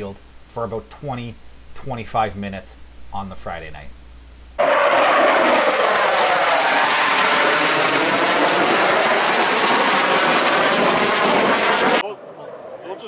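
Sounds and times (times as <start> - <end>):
jet engines roaring: 4.6 - 13.0.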